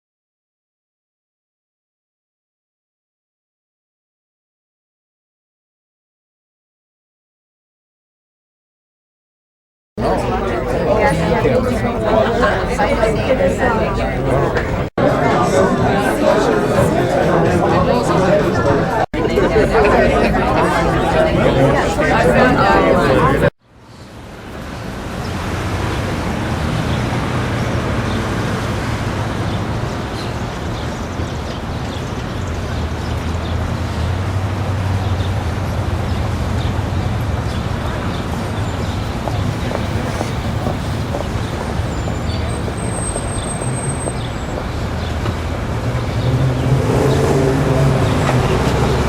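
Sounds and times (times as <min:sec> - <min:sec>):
road traffic rumble: 0:10.0 - 0:49.0.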